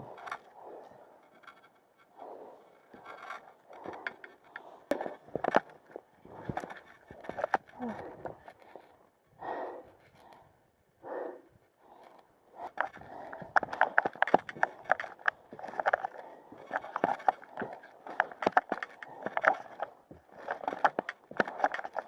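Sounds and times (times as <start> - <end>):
boots and gear clattering: 12.9 - 22.0.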